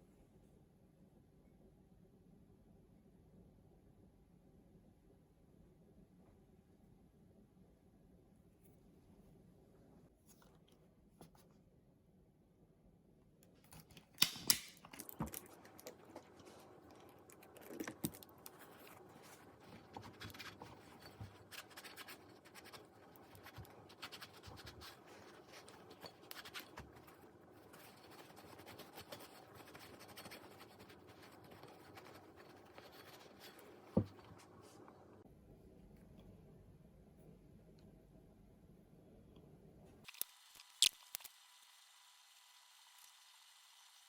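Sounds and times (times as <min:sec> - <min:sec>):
hand scratching and scraping: 0:15.4 - 0:35.1.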